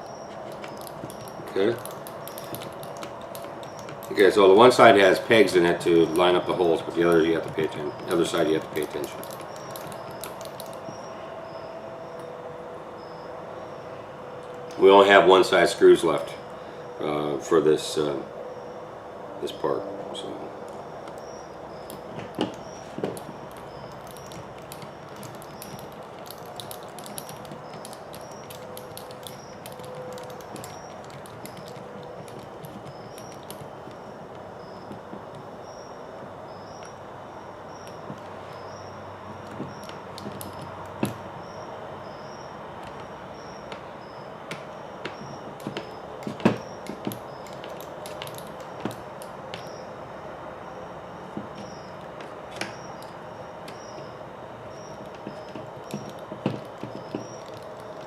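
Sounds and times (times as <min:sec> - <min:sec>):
small parts clicking: 0:00.0 - 0:04.2, 0:06.0 - 0:11.1, 0:20.7 - 0:37.0, 0:44.5 - 0:49.8, 0:51.4 - 0:58.0.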